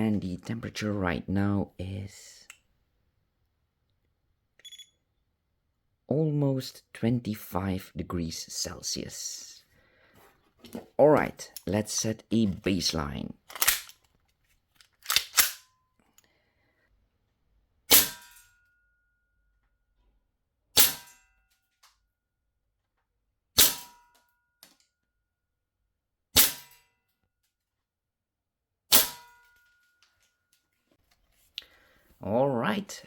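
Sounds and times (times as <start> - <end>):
airsoft pistol shots: 20.8 - 21.1, 23.6 - 24.0, 26.4 - 26.7, 28.9 - 29.3.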